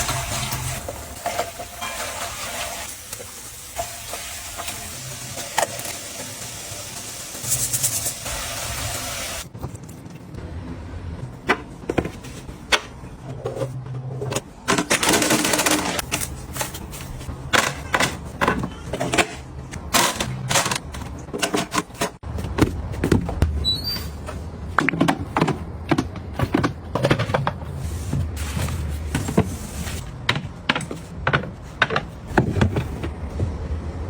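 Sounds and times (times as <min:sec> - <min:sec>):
hiss: 0:03.8 - 0:09.4.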